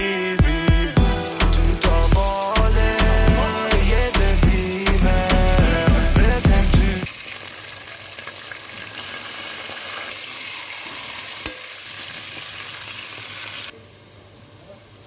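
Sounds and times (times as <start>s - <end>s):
chicken sizzling in a pan: 7.0s - 13.7s.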